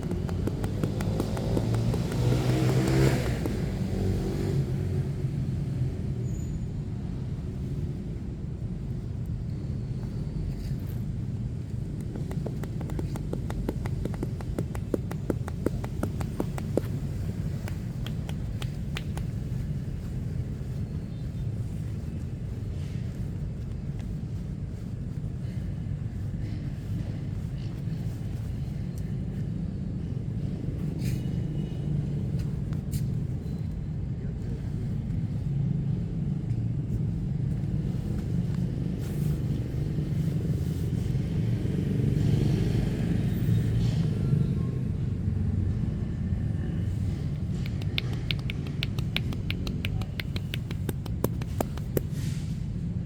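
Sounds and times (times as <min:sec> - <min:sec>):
sharp taps: 0:00.0 - 0:04.0, 0:11.9 - 0:19.5, 0:47.4 - 0:52.2
street traffic rumble: 0:00.0 - 0:53.0.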